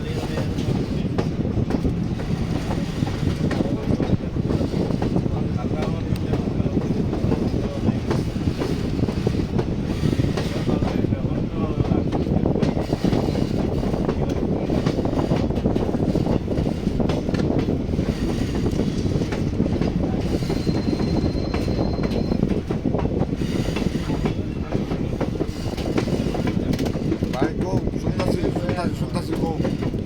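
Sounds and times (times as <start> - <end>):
rattles and clicks: 11.8 - 30.0.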